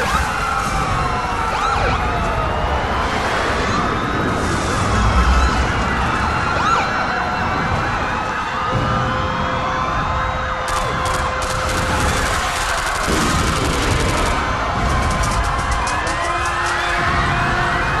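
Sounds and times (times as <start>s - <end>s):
sirens wailing: 0.0s - 18.0s
low rumble: 2.6s - 8.0s.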